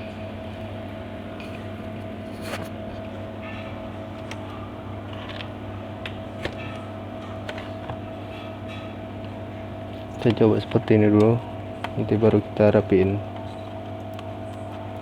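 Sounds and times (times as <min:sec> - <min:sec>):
electrical hum: 0:00.0 - 0:15.0.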